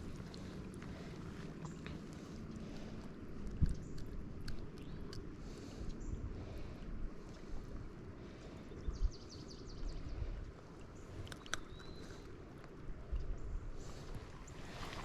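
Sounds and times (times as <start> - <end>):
flowing river water: 0.0 - 8.7, 9.5 - 15.0
wind: 0.0 - 15.0
light ticks: 3.0 - 6.0, 11.2 - 13.3
faint clicks: 11.2 - 12.8.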